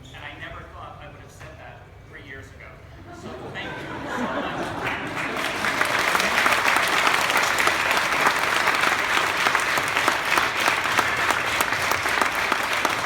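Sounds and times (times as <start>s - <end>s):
crowd applauding: 3.7s - 13.0s.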